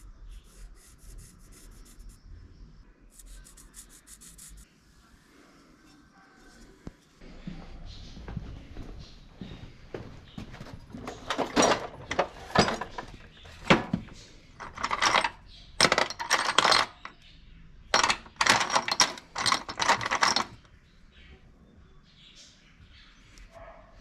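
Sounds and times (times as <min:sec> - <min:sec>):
metal clinking and rattling: 0:10.4 - 0:17.2, 0:17.9 - 0:20.7.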